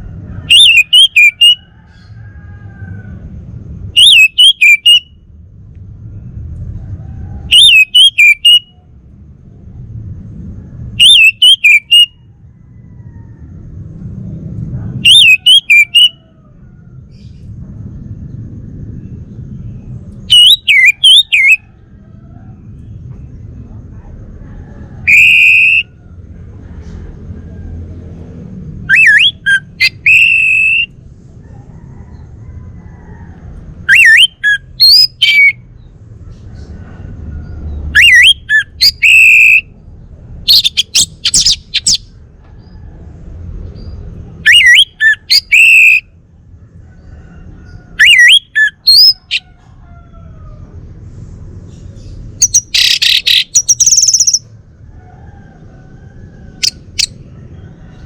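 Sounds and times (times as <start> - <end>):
thrush singing whistled notes: 0.5 - 2.1, 3.9 - 5.3, 7.4 - 8.8, 10.9 - 12.3, 15.0 - 16.3, 19.6 - 21.7, 25.0 - 26.0, 28.8 - 31.0, 33.8 - 35.9, 37.7 - 39.8, 40.5 - 42.2, 43.8 - 46.1, 48.0 - 49.4, 52.4 - 54.5
faint low rumble: 5.1 - 7.7, 8.7 - 11.0, 12.3 - 15.5, 16.2 - 25.1, 26.0 - 30.1.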